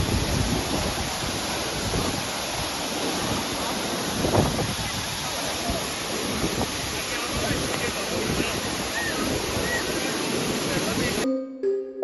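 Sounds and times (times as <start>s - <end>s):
waterfall rushing: 0.0s - 11.2s.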